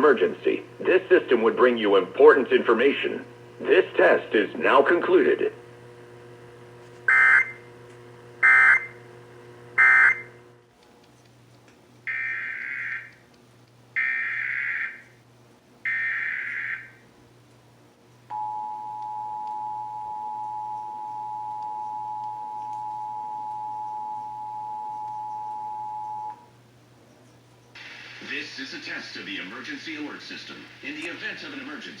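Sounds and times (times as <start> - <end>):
screeching data bursts: 7.1 - 7.6, 8.4 - 9.0, 9.8 - 10.3
two-tone attention signal: 8.4 - 9.0, 9.8 - 10.3, 18.3 - 26.4.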